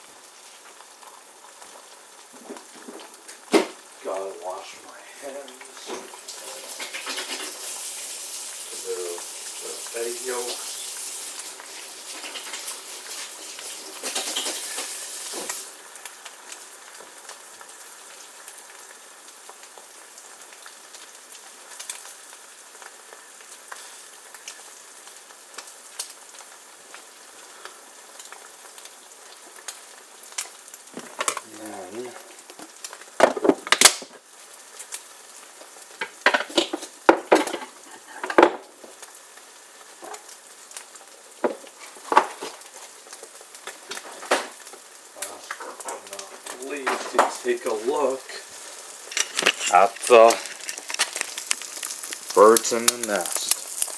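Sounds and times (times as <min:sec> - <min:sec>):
eggs and bread sizzling in a pan: 0:00.0 - 0:53.9
utensils clinking and knocking: 0:49.0 - 0:51.3.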